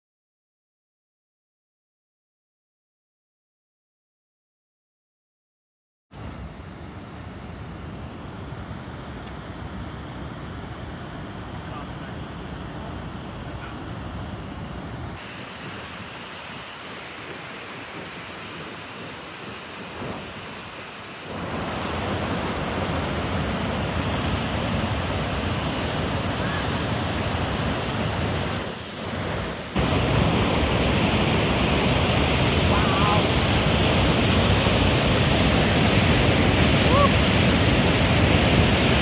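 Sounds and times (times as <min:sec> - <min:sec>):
waterfall roaring: 0:10.6 - 0:39.0.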